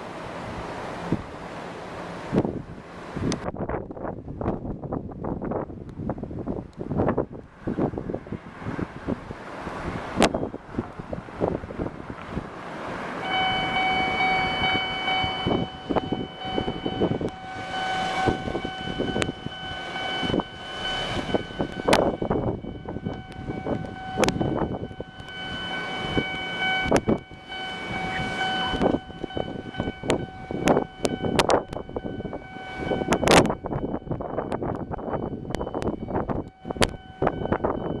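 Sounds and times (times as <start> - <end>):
train clunks and rumble: 0.0 - 38.0
level-crossing alarm ringing: 13.2 - 38.0.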